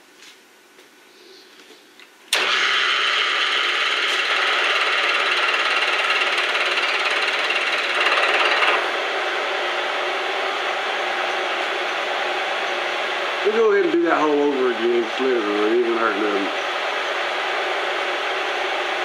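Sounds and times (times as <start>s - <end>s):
milling machine cutting: 2.4s - 9.0s.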